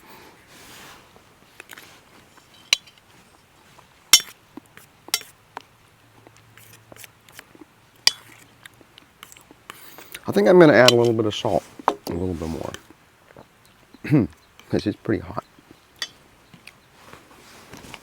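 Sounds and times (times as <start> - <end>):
small scrapes and ticks: 0.6 - 10.2, 16.5 - 18.0
utensil clinking against dish: 5.1 - 5.3, 10.8 - 11.2, 16.0 - 16.2.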